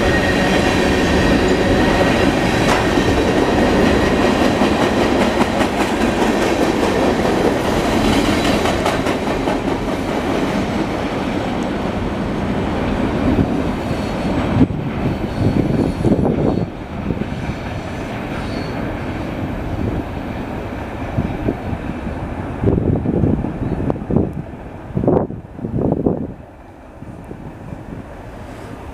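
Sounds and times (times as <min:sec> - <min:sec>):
train wheels clicking over rail joints: 0:00.0 - 0:11.0
wheel squeal: 0:18.4 - 0:18.8.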